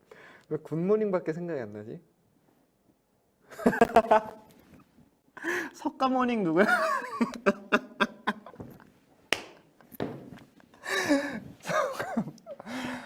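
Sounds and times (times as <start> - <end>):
man laughing breathily: 10.8 - 13.0.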